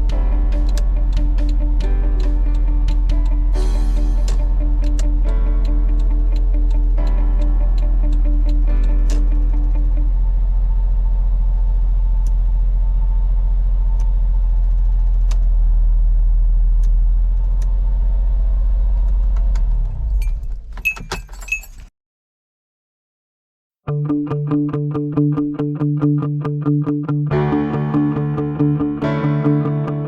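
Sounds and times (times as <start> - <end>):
key clinks and clicks: 20.8 - 21.9.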